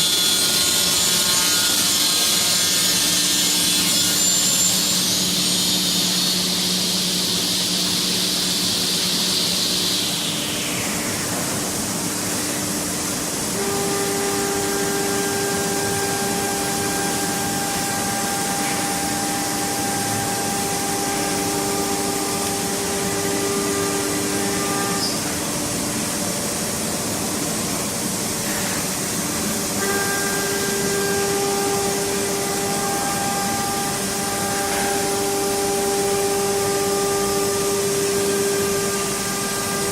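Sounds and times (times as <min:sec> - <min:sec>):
steady machine hiss: 0:00.0 - 0:39.9
router spindle motor whining: 0:13.5 - 0:25.3, 0:29.7 - 0:39.9.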